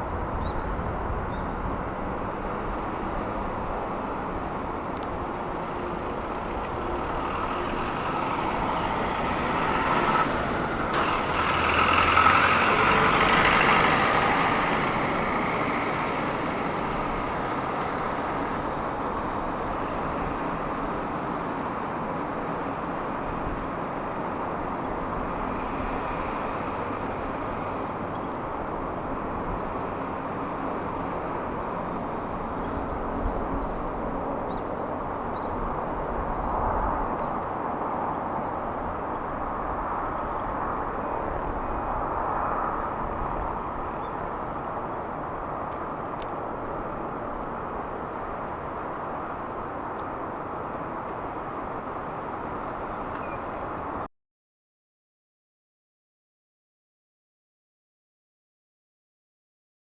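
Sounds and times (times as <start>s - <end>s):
vehicle passing by: 2.5s - 22.1s.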